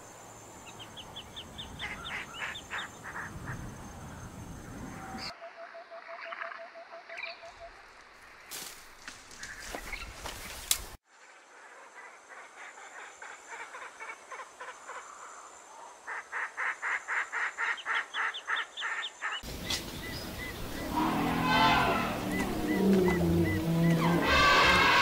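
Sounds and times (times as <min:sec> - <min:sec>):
mix of calls and sounds: 0:16.1 - 0:25.0
rapid repeated animal calls: 0:16.1 - 0:25.0.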